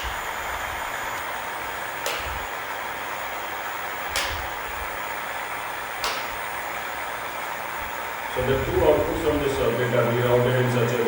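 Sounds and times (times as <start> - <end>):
sharp click: 2.0 - 2.6, 4.1 - 4.7, 6.0 - 6.5.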